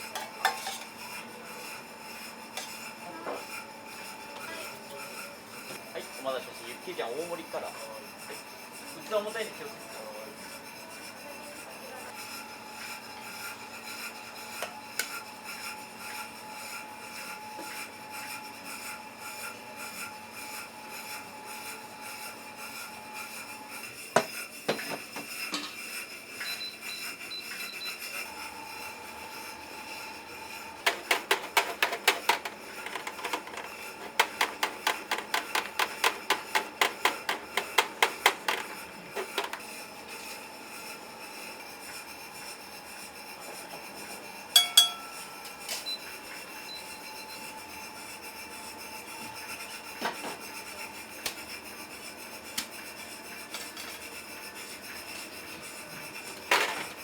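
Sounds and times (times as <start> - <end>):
kitchen equipment hum: 0.0 - 9.9, 28.1 - 57.0
scattered knocks: 30.8 - 39.6
knife chopping on a board: 30.9 - 39.5.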